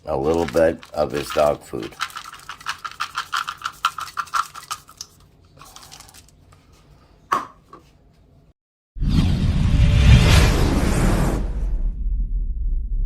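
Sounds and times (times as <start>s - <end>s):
kibble stirred in stew: 0.1s - 4.8s.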